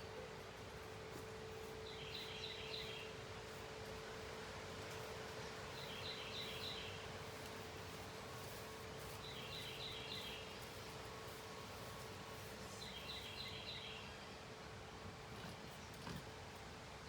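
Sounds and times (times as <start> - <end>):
low steady hum: 0.0 - 17.0.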